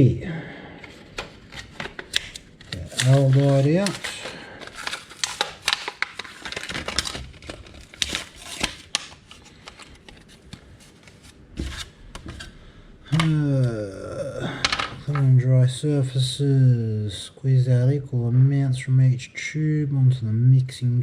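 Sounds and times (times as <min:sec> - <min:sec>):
plastic packaging crinkling: 0:00.8 - 0:12.6.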